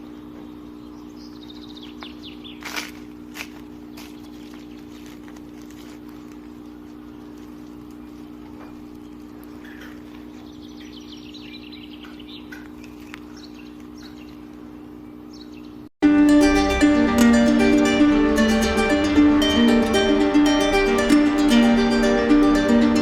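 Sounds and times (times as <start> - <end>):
steady low hum: 16.0 - 23.0.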